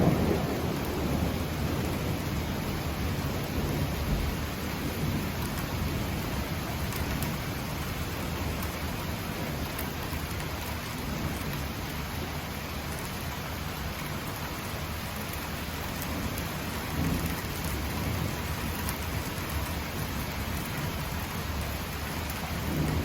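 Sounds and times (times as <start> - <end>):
low thunder rumble: 0.0 - 6.7, 16.0 - 23.0
heavy rain hissing: 0.0 - 23.0.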